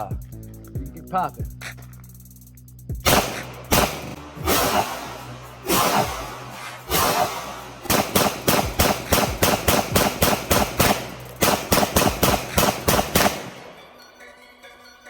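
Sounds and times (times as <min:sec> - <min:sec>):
pistol shots: 0:03.0 - 0:13.9.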